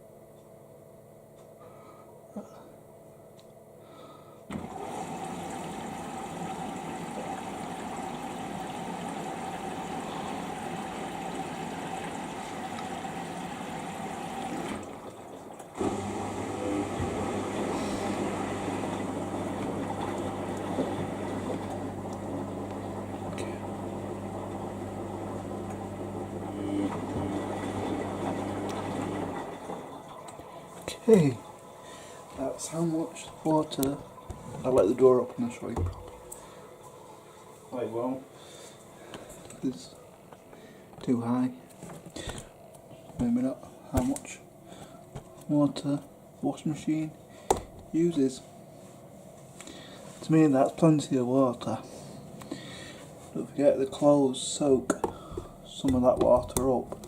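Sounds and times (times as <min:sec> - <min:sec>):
washing machine hum: 0:00.0 - 0:57.0
water rushing into drum: 0:04.5 - 0:36.6.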